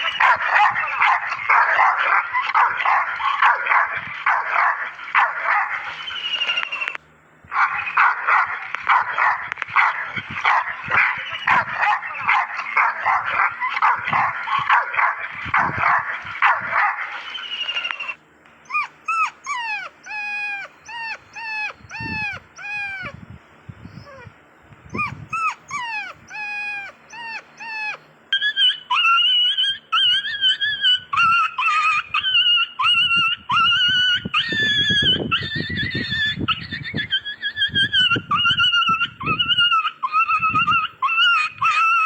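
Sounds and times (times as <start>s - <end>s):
dogs barking: 0.0s - 23.2s, 24.0s - 42.0s
dog whimpering: 5.0s - 7.0s, 10.2s - 14.7s, 17.2s - 23.2s, 23.9s - 24.3s, 24.9s - 42.0s.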